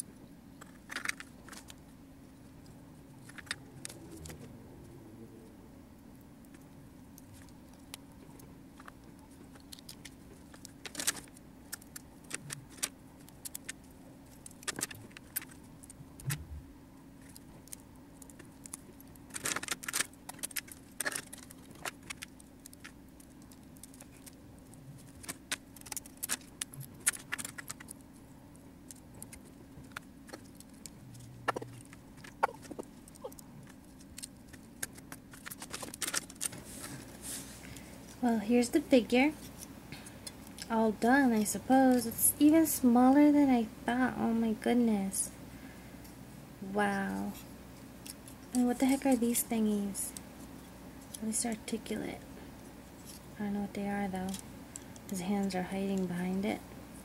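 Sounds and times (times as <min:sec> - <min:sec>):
faint steady hum: 0:00.0 - 0:57.0
plastic parts clicking and snapping: 0:08.8 - 0:16.4, 0:17.2 - 0:24.4, 0:25.0 - 0:28.0, 0:28.9 - 0:36.6.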